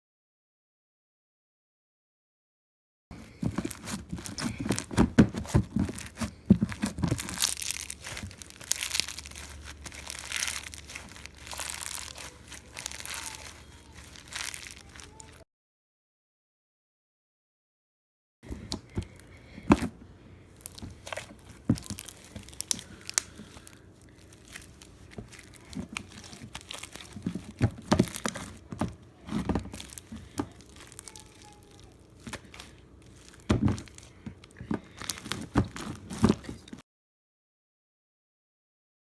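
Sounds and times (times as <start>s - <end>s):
slime squeezed by hand popping: 5.9s - 15.0s.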